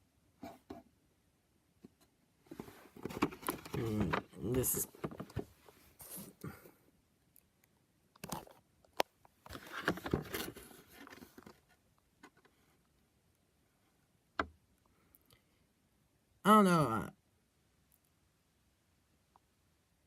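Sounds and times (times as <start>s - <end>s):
packaging rustling and scraping: 2.5s - 6.4s, 9.5s - 11.8s.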